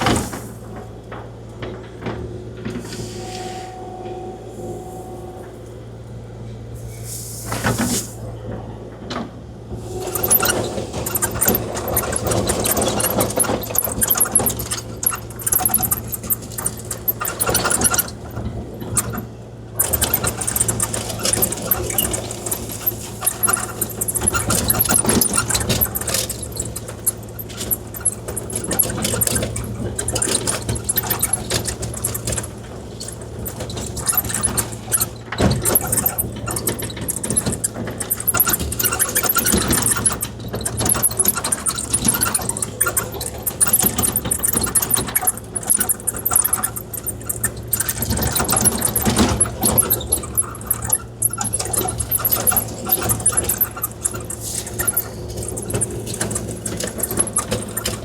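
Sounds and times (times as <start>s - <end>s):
excavator diesel engine running: 9.7s - 58.0s
gravel clicks rattles and scrapes: 9.8s - 58.0s.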